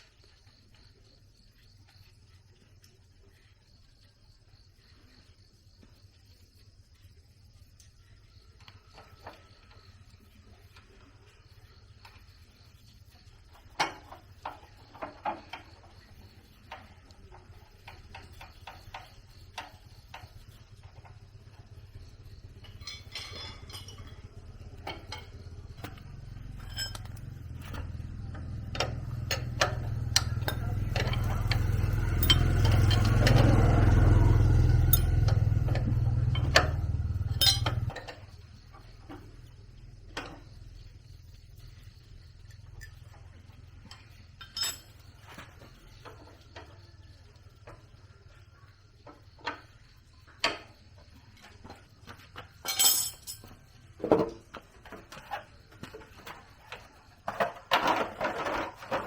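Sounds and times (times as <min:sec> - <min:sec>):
metal tools clinking: 0:22.6 - 0:25.9, 0:26.5 - 0:27.9, 0:28.8 - 0:33.6, 0:34.7 - 0:35.6, 0:36.3 - 0:38.2, 0:43.9 - 0:45.4, 0:52.6 - 0:53.5.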